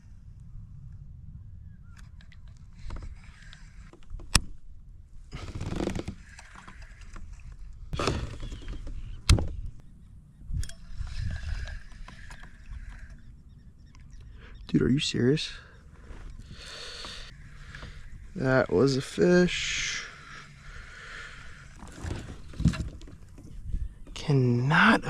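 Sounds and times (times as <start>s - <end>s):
scraping and rustling on kayak: 2.6s - 4.2s, 5.3s - 9.8s, 15.9s - 18.6s, 20.1s - 24.0s.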